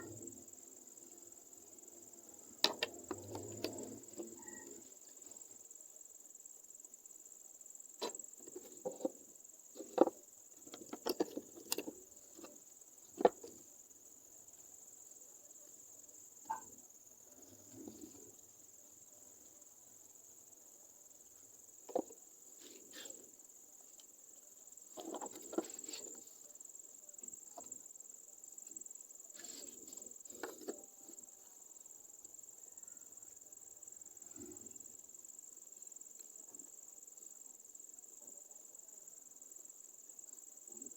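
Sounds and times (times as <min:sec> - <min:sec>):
crickets chirring: 0:00.0 - 0:40.9
sharp clicks and knocks: 0:09.8 - 0:12.6.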